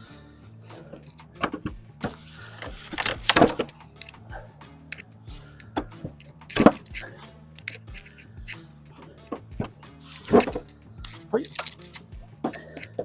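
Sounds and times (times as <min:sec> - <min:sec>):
metallic clanks and knocks of tools: 0:00.9 - 0:04.2, 0:05.6 - 0:08.6, 0:09.3 - 0:13.0.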